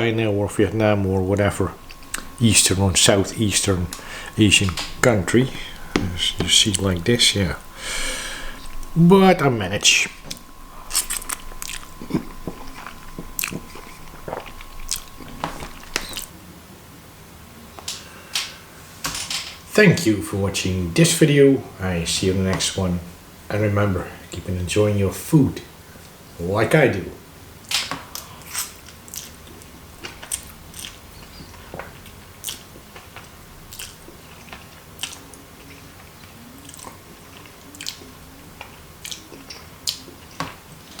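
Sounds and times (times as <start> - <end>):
person chewing noodles: 0.8 - 2.8, 3.7 - 9.0, 10.1 - 16.3, 29.1 - 31.0, 32.0 - 32.6, 33.7 - 40.4
chewing and biting noodles: 10.9 - 16.3, 33.7 - 35.8.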